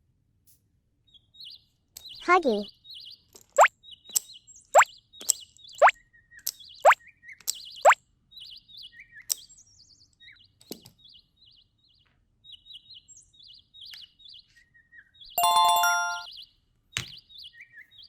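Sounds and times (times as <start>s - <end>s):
bright chime: 15.4s - 16.3s.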